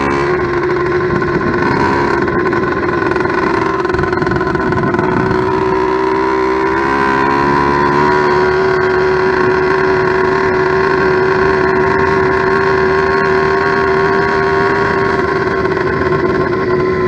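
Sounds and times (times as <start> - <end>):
two-stroke engine running: 0.0 - 17.0.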